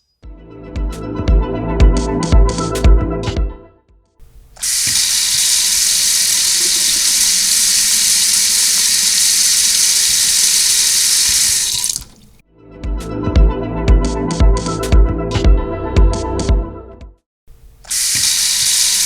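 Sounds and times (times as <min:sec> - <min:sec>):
water running from a tap: 0:04.6 - 0:12.4, 0:17.9 - 0:19.0.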